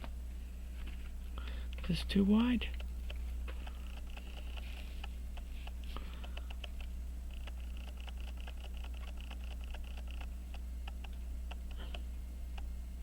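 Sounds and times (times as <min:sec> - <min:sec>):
low electrical hum: 0:00.0 - 0:13.0
mechanical watch ticking: 0:02.7 - 0:12.0.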